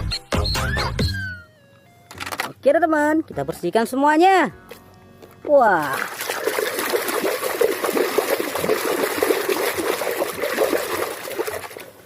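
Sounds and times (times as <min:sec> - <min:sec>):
water splashing and trickling: 0:05.4 - 0:12.0.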